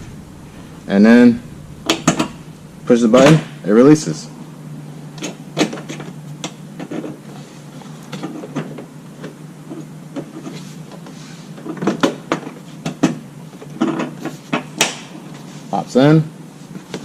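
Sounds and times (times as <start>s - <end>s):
louder clunks: 0.0s - 3.6s.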